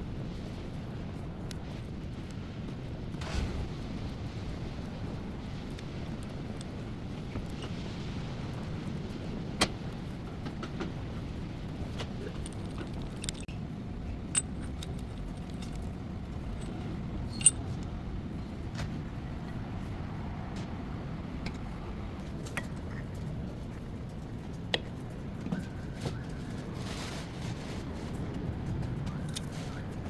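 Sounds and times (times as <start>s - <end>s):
steady low hum: 0.0s - 30.0s
metal tools clinking: 14.3s - 15.9s, 16.5s - 17.6s.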